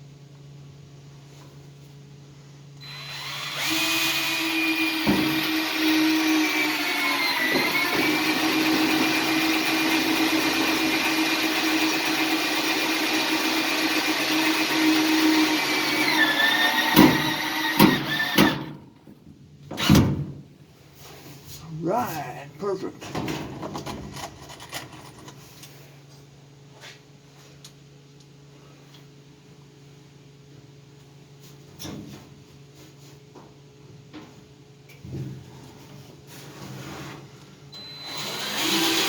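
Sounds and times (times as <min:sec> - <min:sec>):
power drill whining: 0:02.8 - 0:18.8, 0:37.8 - 0:39.0.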